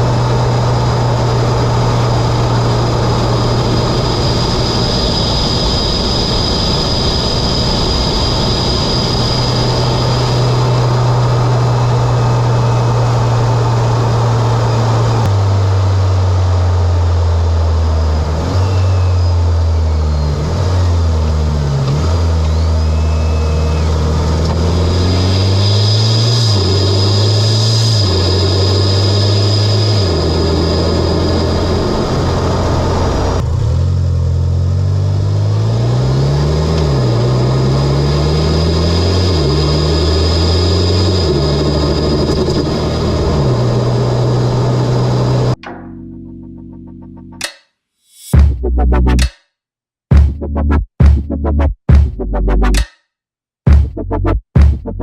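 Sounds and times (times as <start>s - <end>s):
steady high whine: 0.0s - 15.4s, 22.8s - 33.4s, 37.4s - 47.4s
car engine cruising: 0.0s - 47.4s.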